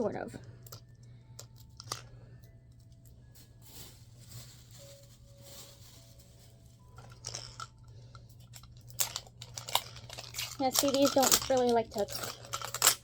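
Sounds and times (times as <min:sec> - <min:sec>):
plastic wrapper crinkling and tearing: 0:02.8 - 0:07.8, 0:08.4 - 0:13.0.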